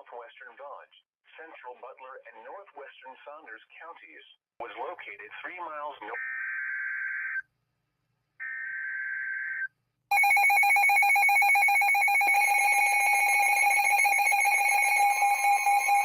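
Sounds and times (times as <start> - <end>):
two-tone alarm signal: 8.4 - 16.0.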